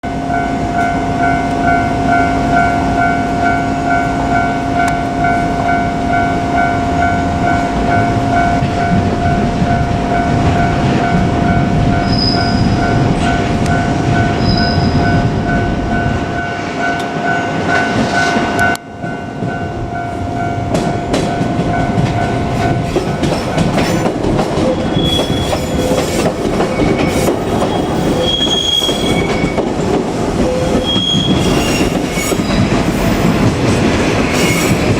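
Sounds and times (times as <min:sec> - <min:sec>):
level-crossing warning bell ringing: 0:00.0 - 0:33.5
train wheels squealing: 0:11.9 - 0:13.0, 0:14.2 - 0:15.2, 0:22.9 - 0:29.6, 0:30.4 - 0:33.3, 0:34.3 - 0:34.9
train wheels clattering over rail joints: 0:20.7 - 0:34.9.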